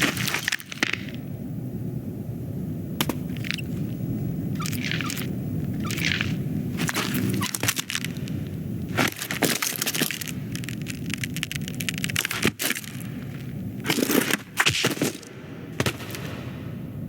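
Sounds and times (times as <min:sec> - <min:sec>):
sharp cracking and crunching: 0:00.0 - 0:01.3, 0:04.6 - 0:16.6.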